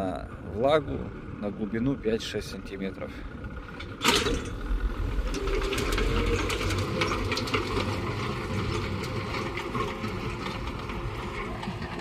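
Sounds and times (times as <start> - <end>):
tractor engine running: 0.0 - 12.0
seeder clicking and rattling: 3.4 - 12.0.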